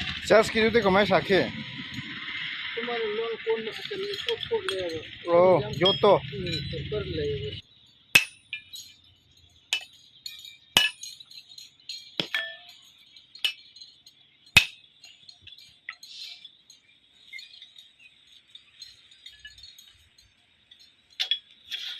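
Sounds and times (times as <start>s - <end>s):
iron pieces clinking together: 3.7s - 7.1s, 8.1s - 21.9s.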